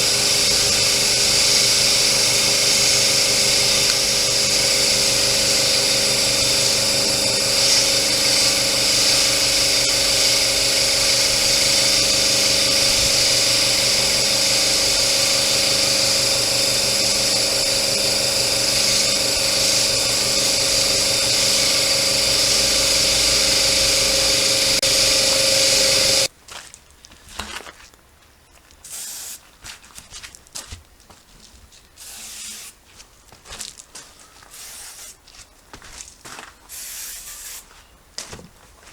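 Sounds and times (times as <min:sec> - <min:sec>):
small motor humming: 0:00.0 - 0:26.3, 0:28.9 - 0:29.4, 0:32.0 - 0:32.8, 0:34.5 - 0:35.2, 0:36.7 - 0:37.6.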